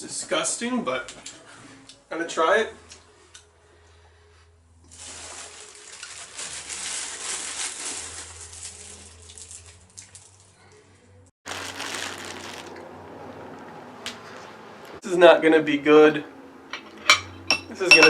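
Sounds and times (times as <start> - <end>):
food packaging rustling: 4.9 - 10.4, 11.5 - 12.9.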